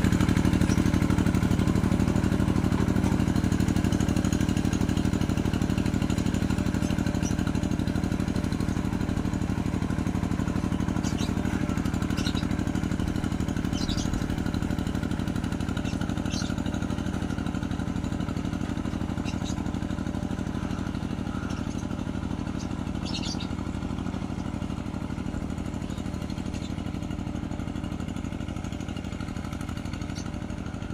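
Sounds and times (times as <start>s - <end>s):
tractor engine under load: 0.0s - 30.9s
high bird chirps: 10.9s - 12.6s, 13.6s - 14.3s, 15.8s - 16.6s, 19.2s - 19.6s, 21.2s - 23.6s.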